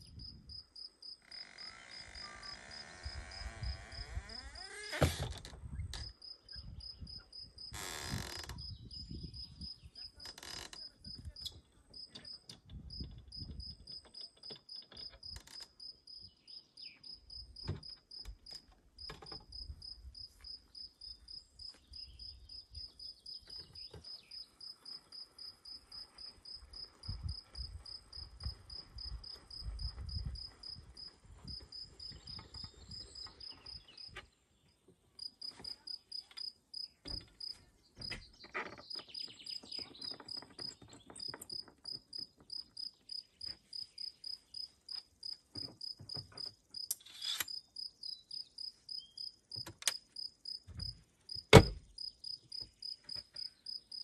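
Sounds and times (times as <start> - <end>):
cricket chirping: 40.3 - 54.0.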